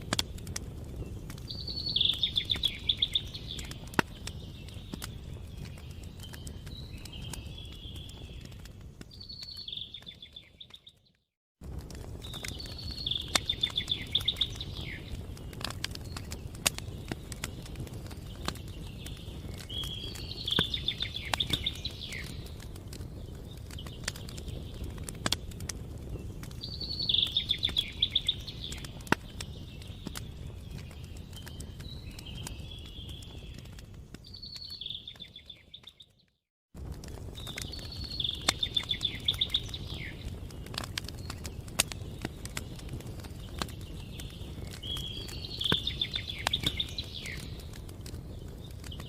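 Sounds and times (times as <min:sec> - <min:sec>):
wood fire crackling and popping: 0:00.0 - 0:49.0
songbird trilling: 0:01.5 - 0:03.8, 0:12.6 - 0:15.1, 0:26.7 - 0:28.9, 0:37.7 - 0:40.2.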